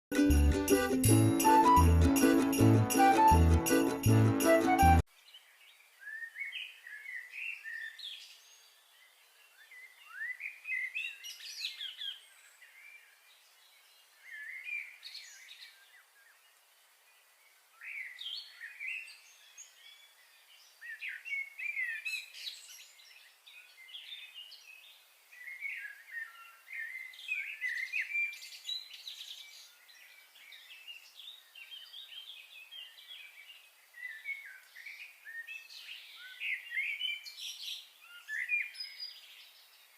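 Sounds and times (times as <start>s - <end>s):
small birds chirping: 5.1s - 39.9s.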